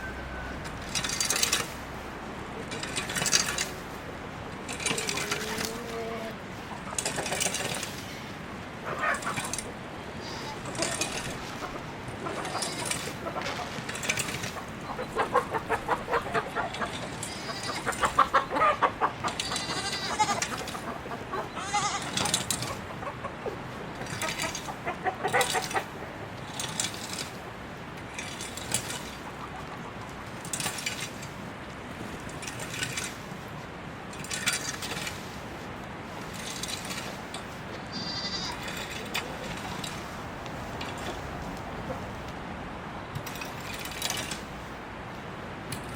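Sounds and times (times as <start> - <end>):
farm animals bleating: 4.9 - 6.4, 10.1 - 11.2, 12.2 - 13.7, 16.8 - 22.8, 37.8 - 38.8.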